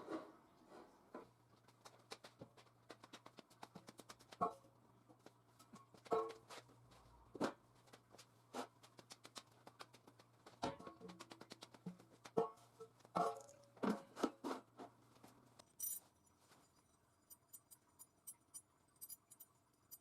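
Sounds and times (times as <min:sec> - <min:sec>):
light rapid clicks: 0:08.8 - 0:12.3.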